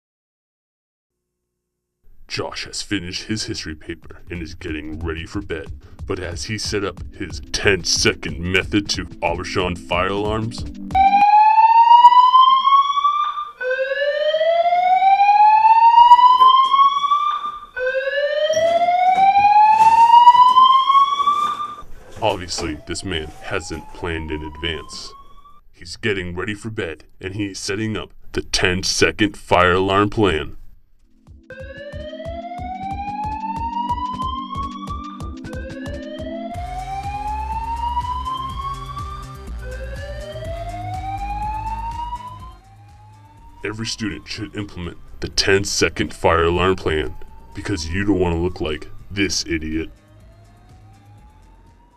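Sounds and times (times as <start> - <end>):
music with beat and bass: 4.9 - 11.3, 31.1 - 43.6
fire alarm rising whoop: 9.9 - 25.6, 31.5 - 51.9.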